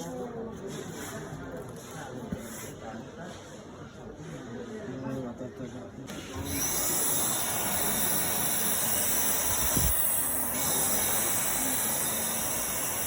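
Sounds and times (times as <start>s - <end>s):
vacuum cleaner running: 6.2s - 13.0s.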